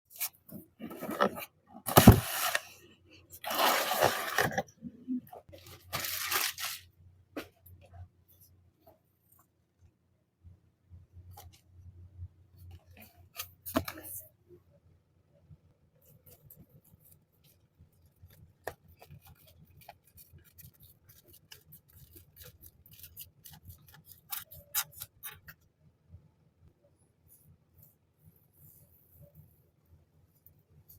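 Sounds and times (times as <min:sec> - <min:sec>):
packaging rustling and tearing: 0:05.6 - 0:06.8.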